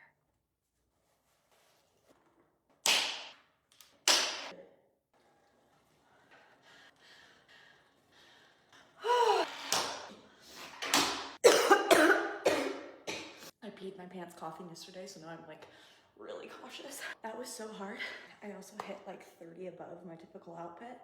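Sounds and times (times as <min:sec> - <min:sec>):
woman coughing: 0:11.4 - 0:13.5.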